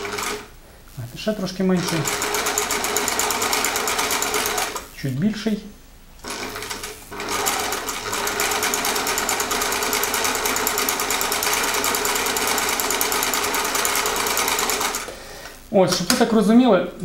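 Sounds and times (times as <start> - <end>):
sewing machine clattering: 1.8 - 4.8, 6.2 - 15.1.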